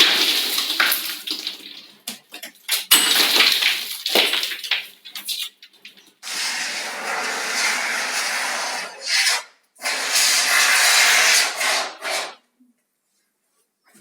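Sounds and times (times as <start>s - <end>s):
abrasive rubbing on plaster wall: 3.8s - 12.4s.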